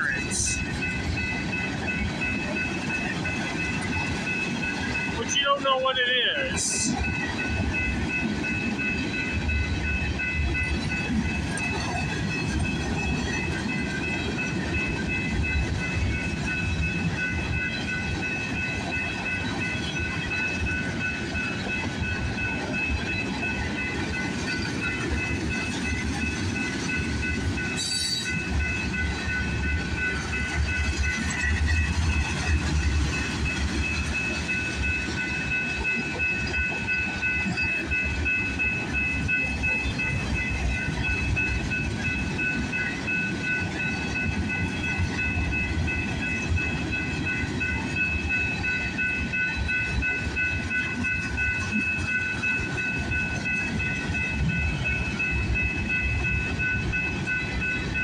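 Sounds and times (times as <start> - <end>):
freight train cars rumbling past: 0.0 - 58.0
steady high-pitched tones: 0.0 - 58.0.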